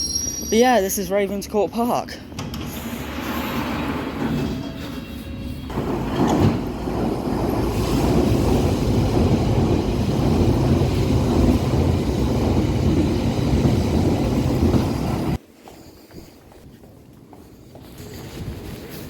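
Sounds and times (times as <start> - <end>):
underground train rumbling past: 2.7 - 15.4.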